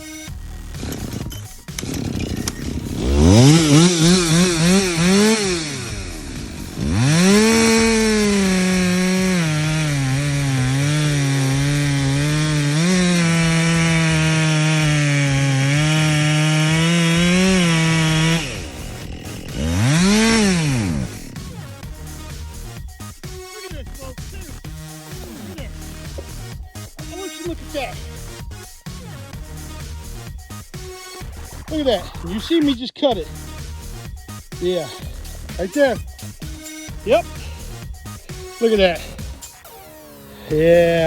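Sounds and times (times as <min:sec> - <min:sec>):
chainsaw cutting wood: 0:00.0 - 0:32.5, 0:33.2 - 0:41.0
chainsaw revving: 0:00.0 - 0:32.6, 0:33.2 - 0:41.0.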